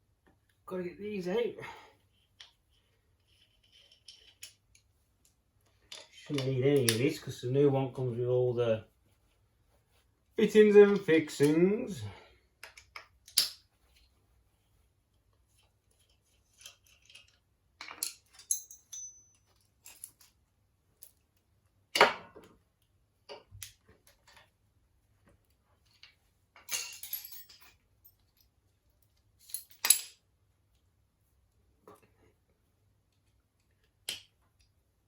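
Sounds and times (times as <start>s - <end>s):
metal parts and tools clinking: 3.2s - 7.2s, 15.9s - 20.4s, 25.8s - 30.2s.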